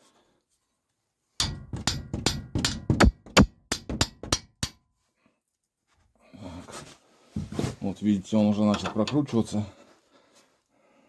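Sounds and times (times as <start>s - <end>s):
sharp metallic knocks: 1.4s - 4.8s.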